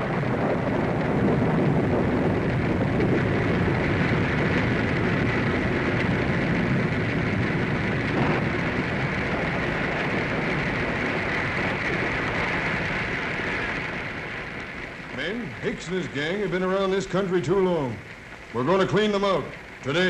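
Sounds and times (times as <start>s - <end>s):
heavy rain: 0.0s - 20.0s
wind: 0.0s - 20.0s.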